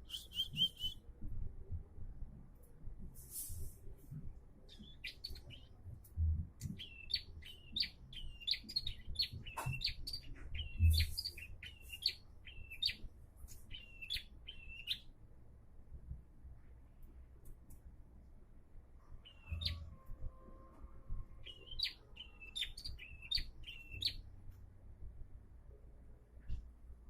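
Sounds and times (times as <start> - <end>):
bird chirping: 0.0 - 1.0, 4.7 - 5.8, 6.6 - 13.0, 13.6 - 15.1, 19.2 - 20.0, 21.4 - 24.2.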